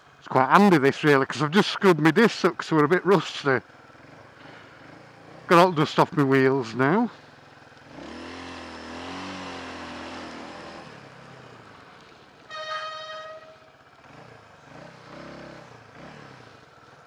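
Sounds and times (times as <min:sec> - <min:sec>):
vehicle engine running: 0:00.0 - 0:17.0
horn toot: 0:12.5 - 0:13.8.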